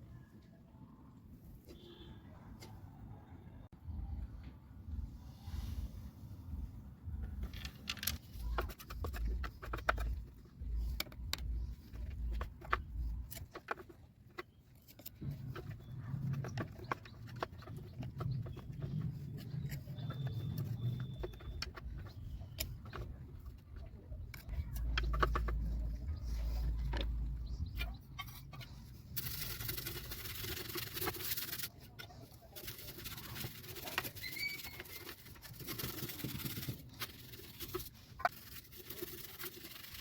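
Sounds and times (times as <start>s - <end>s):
rough rubbing sound: 5.1s - 40.0s
plastic and metal parts clicking: 7.3s - 18.8s.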